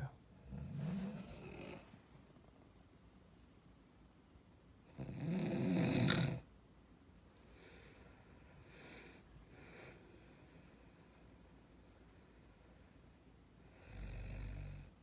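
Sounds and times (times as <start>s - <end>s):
loud snore: 0.4s - 2.0s, 4.9s - 6.5s, 13.7s - 14.9s
breathy breaths: 7.3s - 14.2s.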